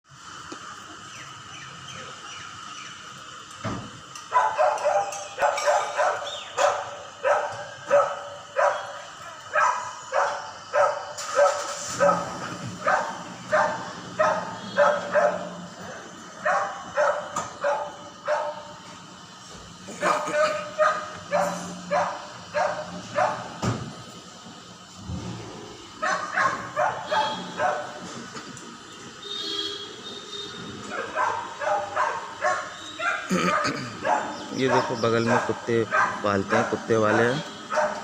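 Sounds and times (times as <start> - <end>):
dog barking: 4.3 - 15.6, 16.4 - 18.7, 20.0 - 23.6, 26.0 - 28.0, 30.9 - 38.0.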